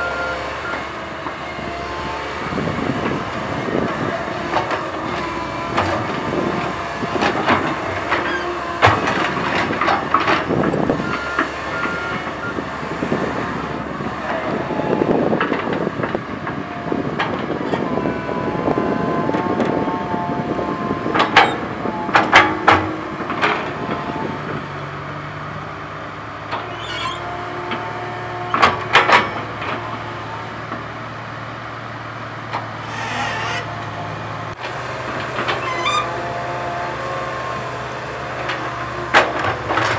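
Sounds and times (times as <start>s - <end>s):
whining hydraulics: 0.0s - 16.0s, 26.5s - 30.4s, 32.6s - 39.9s
diesel engine running: 0.0s - 39.9s.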